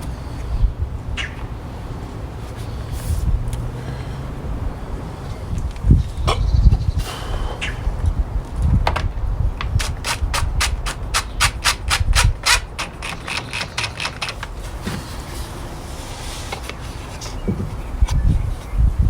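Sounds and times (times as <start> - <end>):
ratcheting hand tool clicking: 9.6 - 14.7
rubbing and handling noise: 9.6 - 18.8.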